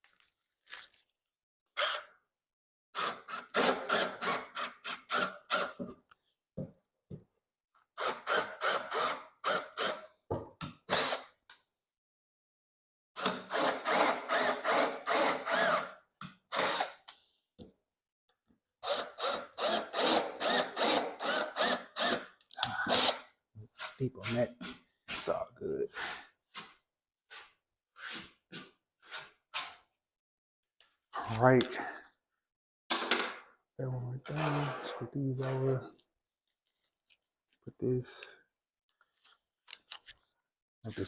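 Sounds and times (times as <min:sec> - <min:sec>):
power drill driving screws: 0:03.0 - 0:05.8, 0:08.0 - 0:10.0, 0:10.9 - 0:11.3, 0:13.2 - 0:17.0, 0:18.8 - 0:22.3, 0:22.9 - 0:23.3.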